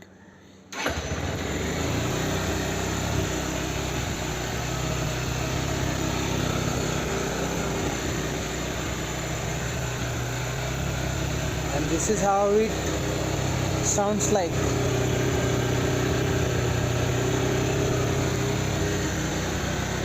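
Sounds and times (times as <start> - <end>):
motorcycle engine idling: 0.8 - 20.0.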